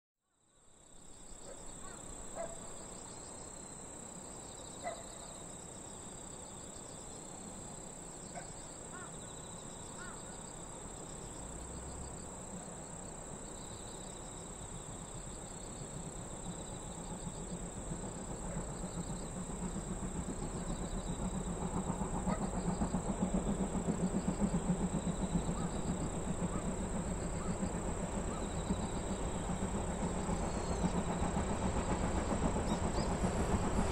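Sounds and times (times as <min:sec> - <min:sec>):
high-pitched insect song: 0:00.4 - 0:33.9
distant steam locomotive rumble: 0:00.6 - 0:33.9.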